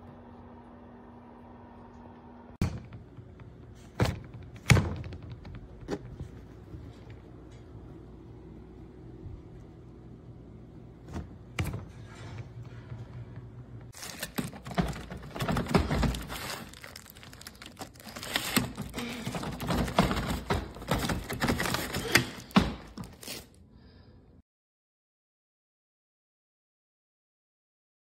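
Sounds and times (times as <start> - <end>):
low steady hum: 0.0 - 21.3.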